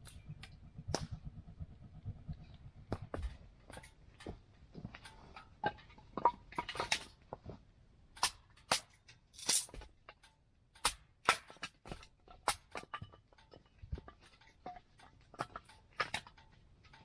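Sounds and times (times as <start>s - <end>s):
wood fire crackling: 0.0s - 10.1s.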